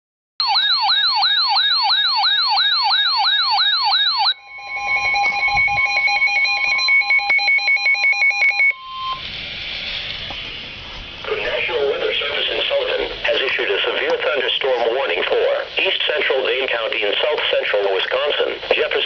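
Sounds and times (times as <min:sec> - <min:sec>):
sweeping siren-like tone: 0:01.2 - 0:11.3.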